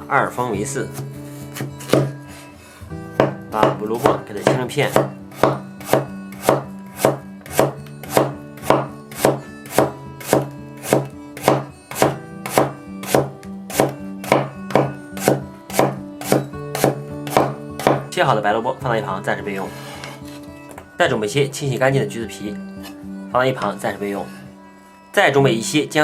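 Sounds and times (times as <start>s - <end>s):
knife chopping radish on board: 0.9s - 2.2s, 3.1s - 18.1s.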